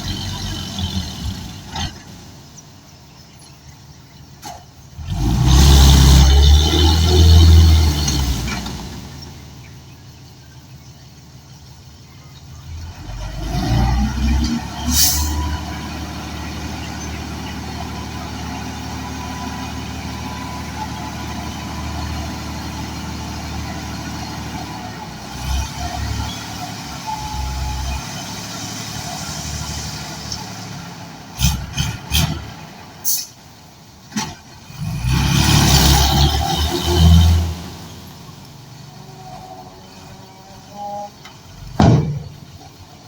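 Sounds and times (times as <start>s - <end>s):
vehicle engine droning: 0.0s - 43.0s
sharp knocks and clatters: 41.7s - 42.9s.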